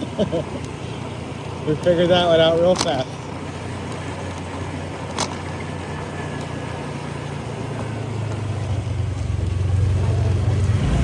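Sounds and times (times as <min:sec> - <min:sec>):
scooter engine hum: 0:00.0 - 0:11.0
rushing noise: 0:09.8 - 0:11.0.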